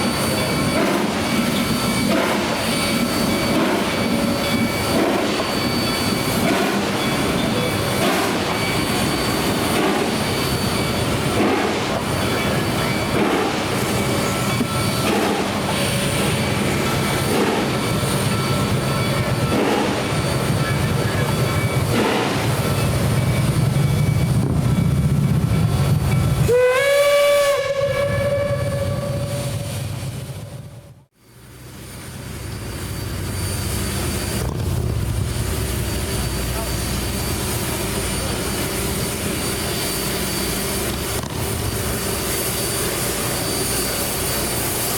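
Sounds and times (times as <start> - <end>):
train rumbling and clattering: 0.0 - 44.9
steam whistle: 26.4 - 30.7.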